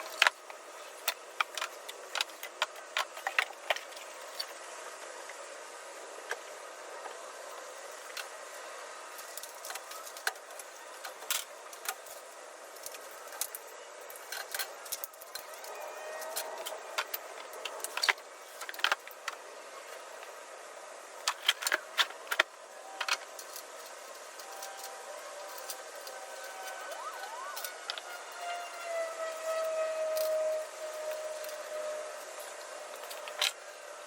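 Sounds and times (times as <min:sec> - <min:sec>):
steady background hiss: 0:00.0 - 0:34.0
metal parts clinking and jingling: 0:12.8 - 0:19.3, 0:23.0 - 0:26.8.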